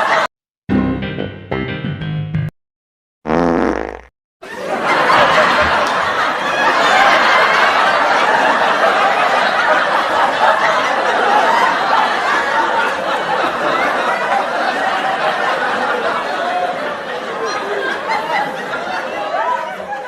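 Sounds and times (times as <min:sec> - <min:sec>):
people laughing: 0:00.0 - 0:00.3, 0:04.4 - 0:20.0
babble of chatter: 0:04.5 - 0:20.0.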